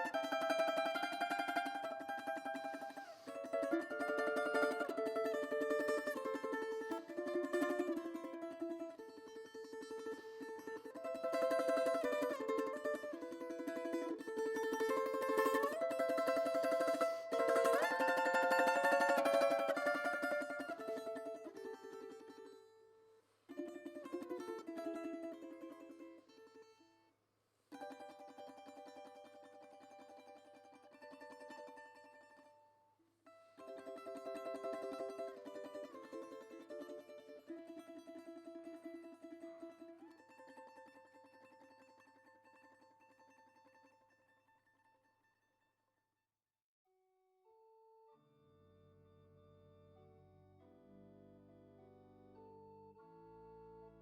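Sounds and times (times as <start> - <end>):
plucked string instrument melody: 0.0 - 22.9, 23.5 - 27.0, 27.8 - 32.7, 33.3 - 44.9.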